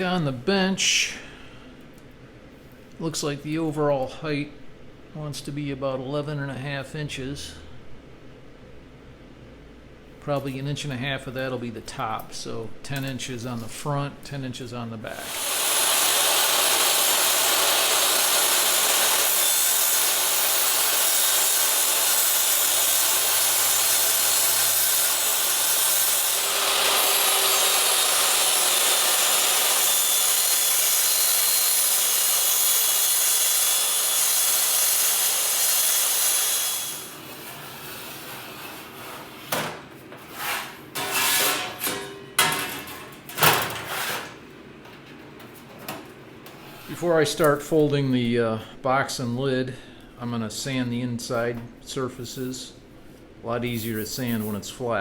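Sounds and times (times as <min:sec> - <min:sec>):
power tool on sheet steel: 0:15.2 - 0:37.7.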